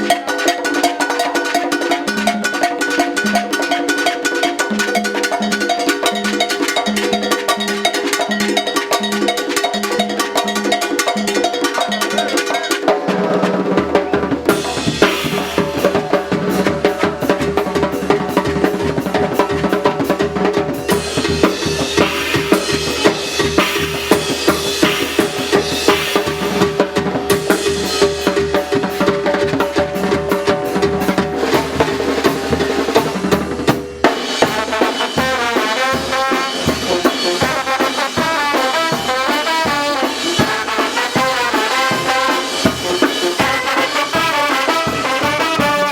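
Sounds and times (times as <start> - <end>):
congas: 0.0 - 45.9
snare drum: 0.0 - 45.9
brass band playing: 12.7 - 45.9
bass drum: 13.6 - 37.8.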